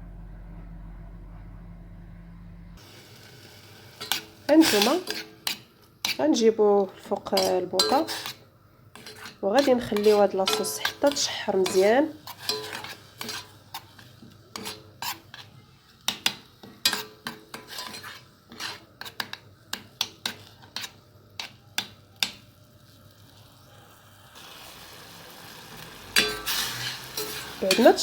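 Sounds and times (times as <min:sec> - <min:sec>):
sauce sizzling in oil: 0:02.8 - 0:28.0
spoon clinking against a pan: 0:07.2 - 0:08.4, 0:09.0 - 0:13.8, 0:16.1 - 0:22.4, 0:26.2 - 0:28.0.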